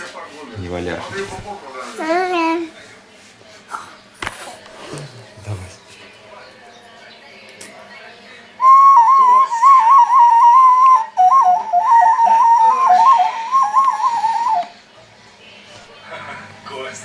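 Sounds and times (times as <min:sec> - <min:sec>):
clay whistle fluttering tone: 0:08.6 - 0:14.7.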